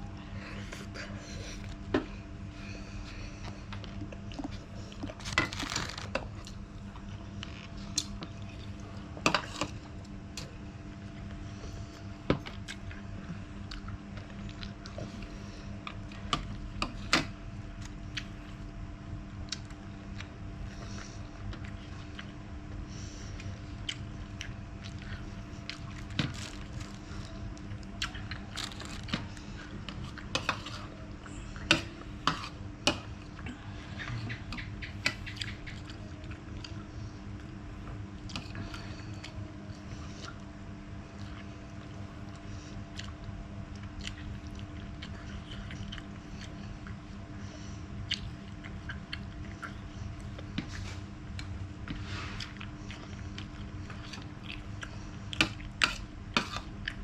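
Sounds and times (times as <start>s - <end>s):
steady low hum: 0.0s - 57.0s
person chewing crunchy food: 3.2s - 18.7s, 19.3s - 36.8s, 37.4s - 57.0s.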